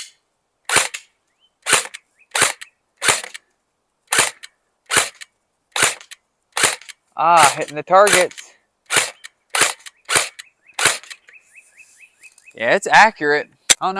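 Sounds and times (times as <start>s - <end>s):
airsoft gun single shots: 5.8s - 6.9s, 8.1s - 11.2s.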